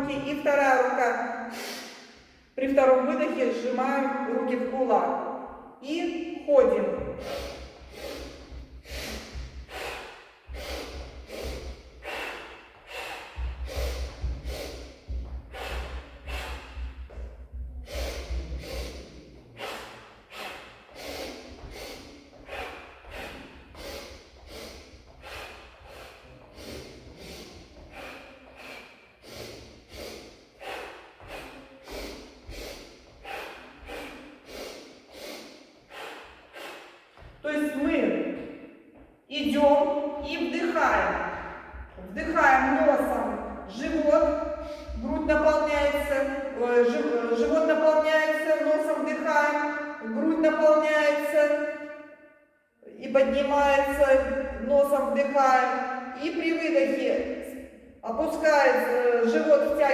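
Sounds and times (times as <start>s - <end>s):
person exhaling through lips: 1.5s - 2.1s, 7.2s - 37.3s
person sniffing through nose: 1.5s - 2.2s, 7.2s - 17.0s, 17.8s - 37.2s.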